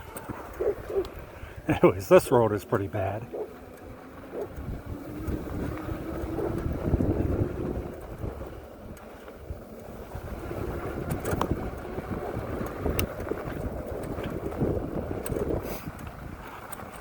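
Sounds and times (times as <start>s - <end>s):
electric bike rumble on rough road: 0.0s - 17.0s
wind buffeting microphone: 0.0s - 17.0s.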